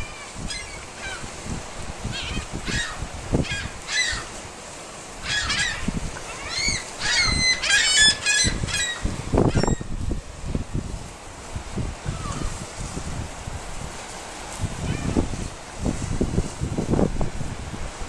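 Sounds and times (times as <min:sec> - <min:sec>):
seagulls squawking: 0:00.0 - 0:01.3, 0:02.1 - 0:04.4, 0:05.3 - 0:09.8.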